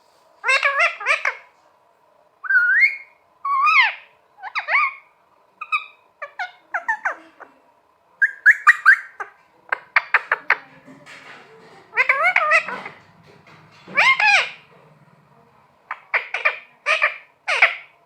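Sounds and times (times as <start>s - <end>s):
parrot whistling and squawking: 0.4s - 1.5s, 2.4s - 7.2s, 8.2s - 10.6s, 11.9s - 14.7s, 15.9s - 18.0s.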